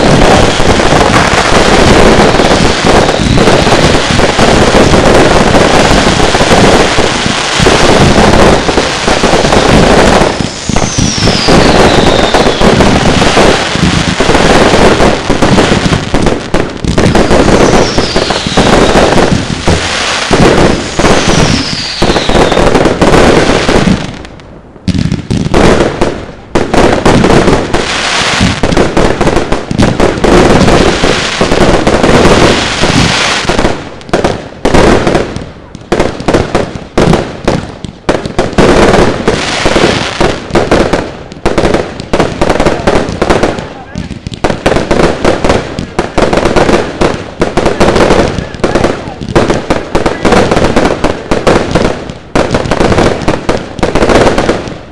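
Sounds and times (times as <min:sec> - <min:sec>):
firework bangs and crackles: 0:00.0 - 0:54.9
falling firework whistles: 0:02.9 - 0:04.0, 0:10.2 - 0:14.1, 0:17.2 - 0:23.8.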